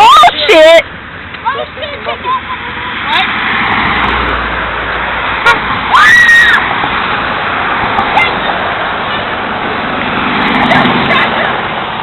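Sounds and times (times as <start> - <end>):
passing road traffic: 0.0 - 12.0
girl shrieking: 5.9 - 6.6.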